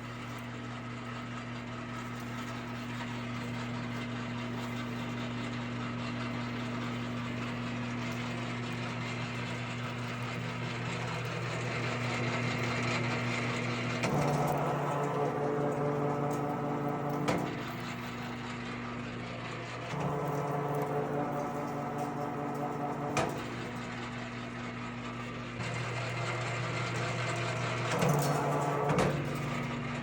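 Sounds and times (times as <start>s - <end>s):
wire stripping machine motor humming: 0.0s - 30.0s.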